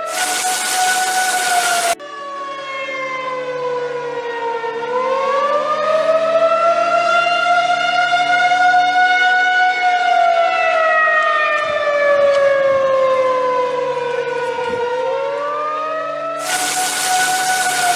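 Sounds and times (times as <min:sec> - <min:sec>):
loud burst of hiss: 0:00.0 - 0:02.0, 0:16.4 - 0:17.9
warning siren wailing: 0:00.0 - 0:17.9.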